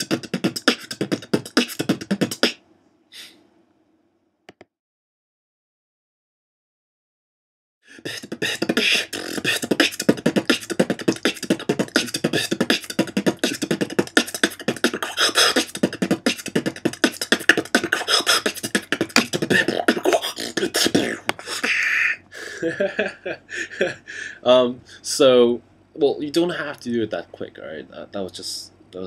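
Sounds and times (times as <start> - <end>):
person beatboxing fast: 0.0 - 2.6, 7.9 - 22.2.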